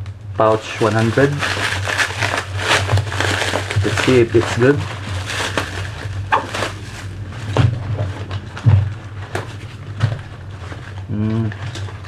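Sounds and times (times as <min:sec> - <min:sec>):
steady low hum: 0:00.0 - 0:12.0
camera pouch handling noise: 0:00.8 - 0:08.2.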